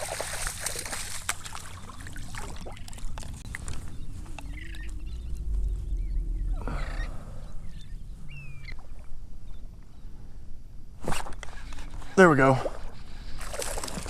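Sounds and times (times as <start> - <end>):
small splashes: 0.0 - 3.8, 13.4 - 14.0
water sloshing: 0.0 - 5.1, 12.4 - 14.0
wind rumble on microphone: 1.8 - 12.0
chirping bird calls: 3.8 - 8.9.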